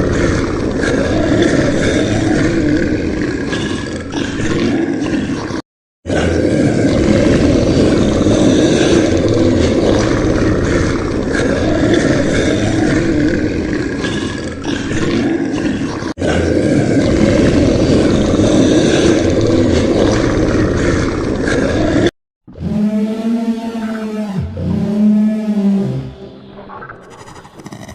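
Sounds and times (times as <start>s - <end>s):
animal roaring: 6.1s - 13.8s, 16.2s - 21.6s.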